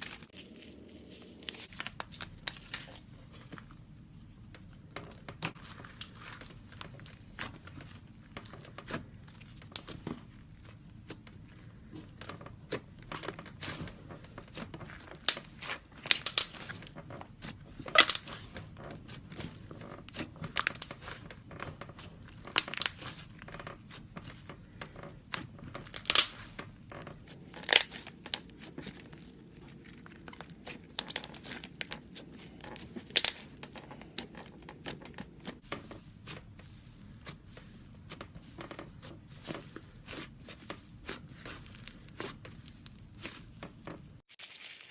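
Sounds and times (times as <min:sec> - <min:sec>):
slime squishing with sticky pops: 0:01.7 - 0:44.3.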